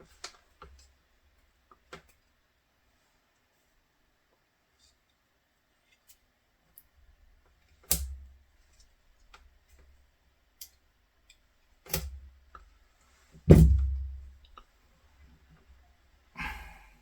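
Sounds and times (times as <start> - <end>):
low thud: 13.5 - 14.3.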